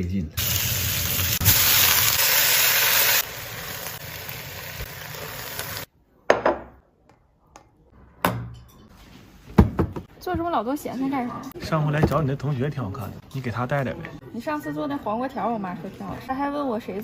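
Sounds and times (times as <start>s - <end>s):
food sizzling in hot oil: 0.4s - 5.9s.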